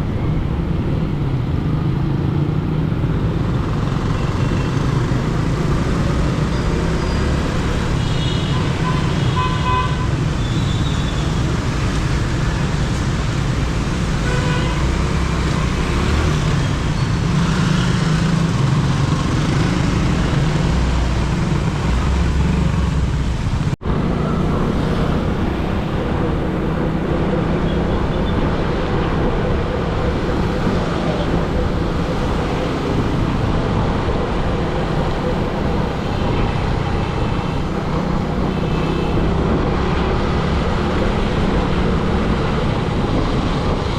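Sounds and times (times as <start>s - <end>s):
road traffic: 0.0s - 43.9s.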